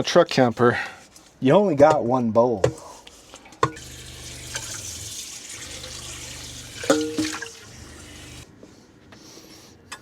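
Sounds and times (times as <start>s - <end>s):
tap water running into sink: 3.7s - 8.4s.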